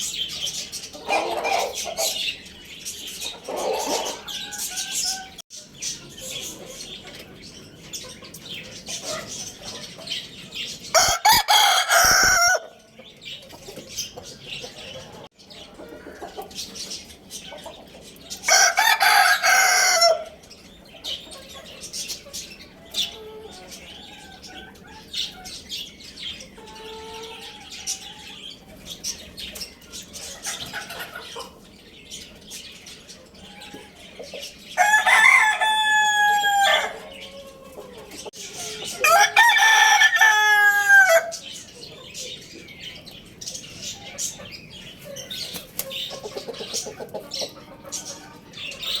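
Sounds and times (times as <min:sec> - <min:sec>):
small birds chirping: 0:00.0 - 0:40.3, 0:41.1 - 0:49.0
rooster crowing: 0:10.9 - 0:12.8, 0:18.5 - 0:20.4, 0:34.8 - 0:37.6, 0:38.9 - 0:41.4.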